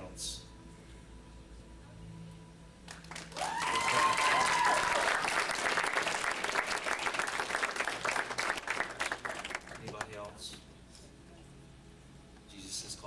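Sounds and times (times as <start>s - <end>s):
crowd applauding: 2.9s - 10.3s
person whooping: 3.3s - 5.4s.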